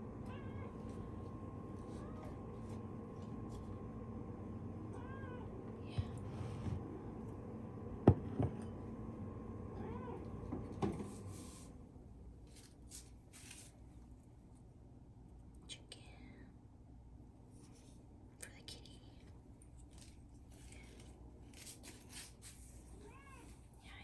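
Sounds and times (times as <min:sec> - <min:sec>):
cat meowing: 0:00.2 - 0:00.9, 0:01.8 - 0:02.4, 0:04.9 - 0:05.6, 0:09.8 - 0:10.3, 0:23.0 - 0:23.6.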